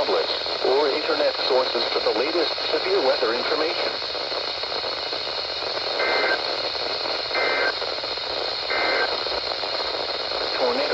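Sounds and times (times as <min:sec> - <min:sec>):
radio static hiss: 0:00.0 - 0:10.9
two-tone digital data bursts: 0:06.0 - 0:06.4, 0:07.3 - 0:07.8, 0:08.7 - 0:09.2.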